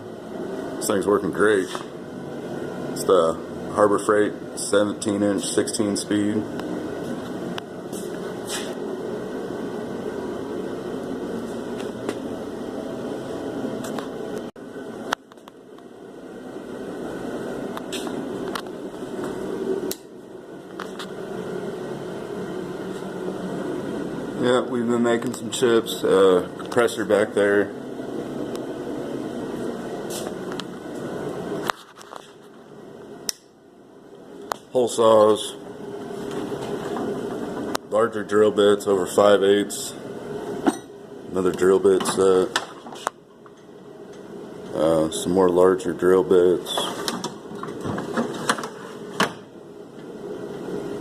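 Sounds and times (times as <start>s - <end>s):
machine running: 0.0s - 33.3s.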